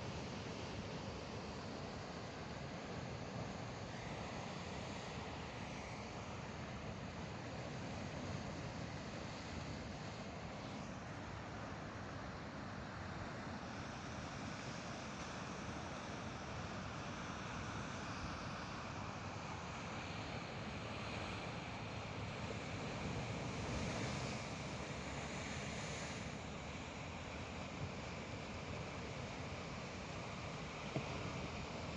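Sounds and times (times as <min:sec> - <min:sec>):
sea waves washing ashore: 0:12.6 - 0:31.9.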